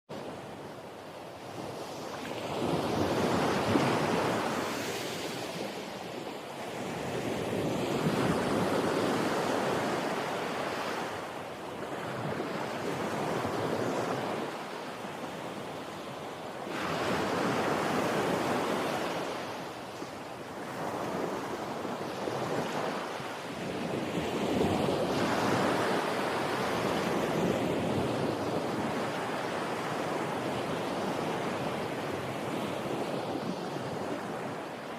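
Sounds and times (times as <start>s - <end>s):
ocean waves breaking on beach: 0.1s - 34.9s.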